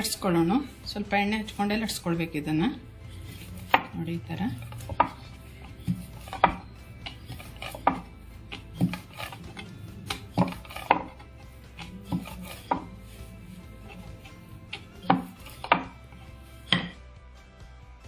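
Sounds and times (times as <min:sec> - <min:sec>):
rolling pin rubbing dough: 0:02.8 - 0:17.0
rolling pin knocking on board: 0:03.7 - 0:04.0, 0:04.9 - 0:06.7, 0:07.3 - 0:09.0, 0:14.8 - 0:16.0, 0:16.7 - 0:17.0.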